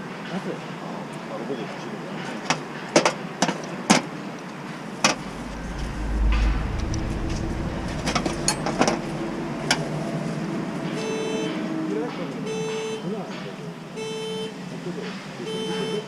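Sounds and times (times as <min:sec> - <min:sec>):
low engine rumble: 0:05.1 - 0:11.7.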